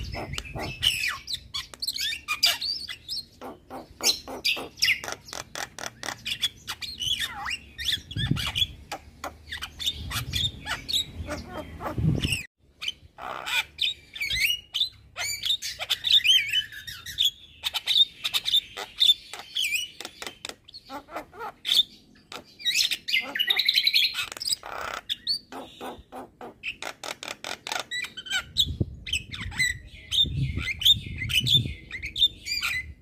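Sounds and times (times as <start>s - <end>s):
bird singing clicks and whistles: 0.0s - 2.6s, 19.3s - 20.8s.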